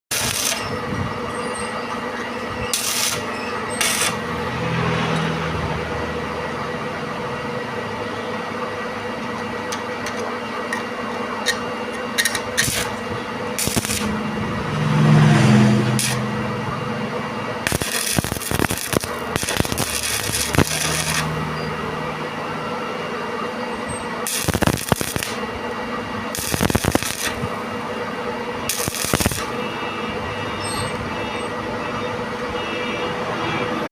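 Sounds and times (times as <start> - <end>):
steady hum: 5.5 - 32.7
grinding noise: 11.4 - 22.5.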